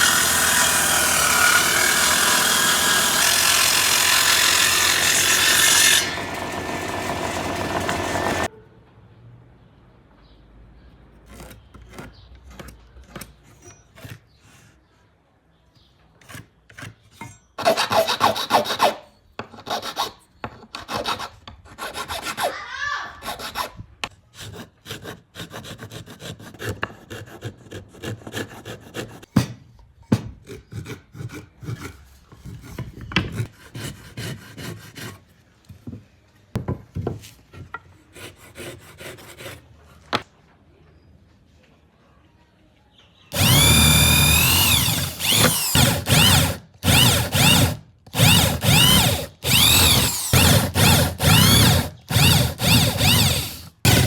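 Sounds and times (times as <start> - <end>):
hand tool scraping wood: 0.0 - 8.5, 43.4 - 54.0.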